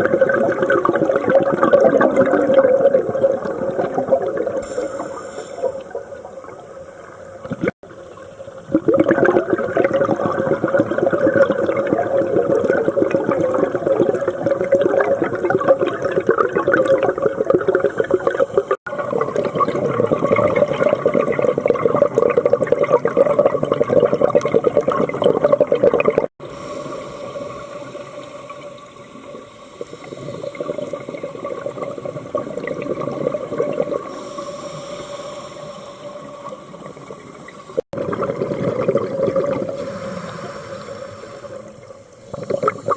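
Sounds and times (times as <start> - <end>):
bubbling exhalation: 0.0 - 5.9, 8.7 - 26.4, 29.8 - 34.2, 37.8 - 42.9
diver breathing through regulator: 4.6 - 6.0, 26.4 - 31.2, 33.8 - 36.7, 39.7 - 42.9.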